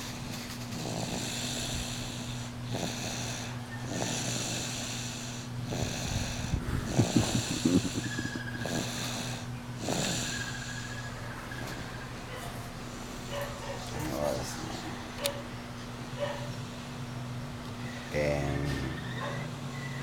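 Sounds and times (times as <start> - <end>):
person snoring loudly: 0.7 - 11.1, 18.1 - 19.4.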